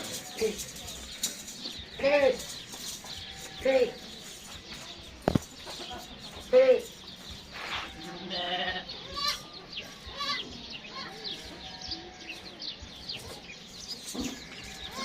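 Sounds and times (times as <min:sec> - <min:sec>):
small birds chirping: 0:00.0 - 0:15.0
goats bleating: 0:01.9 - 0:04.4, 0:06.5 - 0:12.6, 0:14.2 - 0:15.0.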